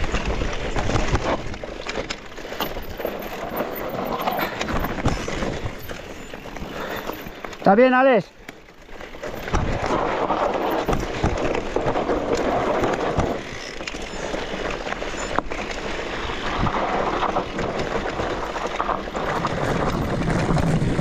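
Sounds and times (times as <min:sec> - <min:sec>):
bike knocking and rattling: 0:00.0 - 0:21.0
tyres rumbling on dirt: 0:00.0 - 0:21.0
wind buffeting microphone: 0:02.6 - 0:07.4, 0:16.2 - 0:21.0.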